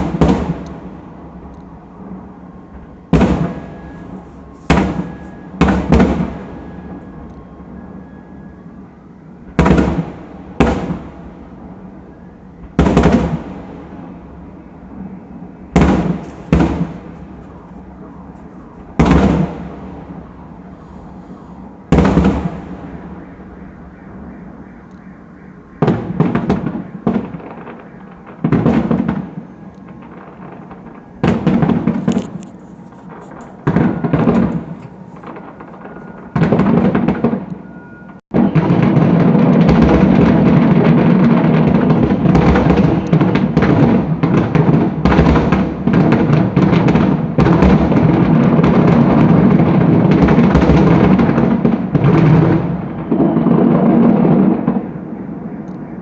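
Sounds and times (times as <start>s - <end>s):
fireworks booming bursts: 0.0s - 7.2s, 9.4s - 55.6s.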